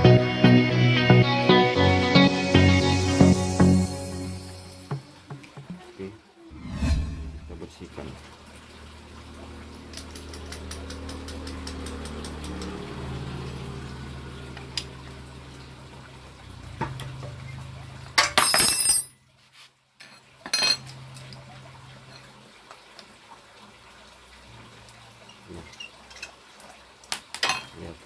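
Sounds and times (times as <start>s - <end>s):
metal parts clinking: 18.2s - 19.1s.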